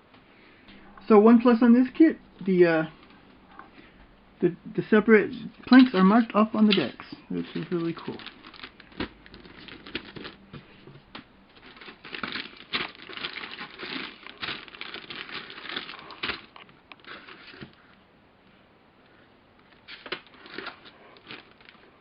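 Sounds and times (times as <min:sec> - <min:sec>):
plastic parts crinkling and clicking: 0:05.7 - 0:17.9, 0:19.6 - 0:22.0.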